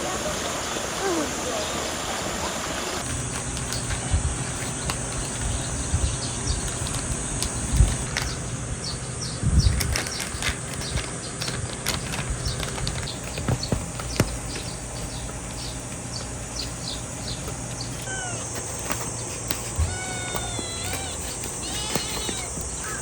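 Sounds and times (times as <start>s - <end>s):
steady background hum: 0.0s - 23.0s
dull thumps: 17.3s - 23.0s.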